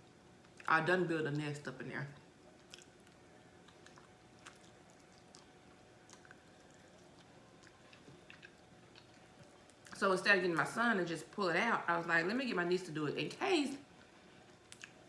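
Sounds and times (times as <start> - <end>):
faint chewing: 2.1 - 10.8, 13.9 - 15.0.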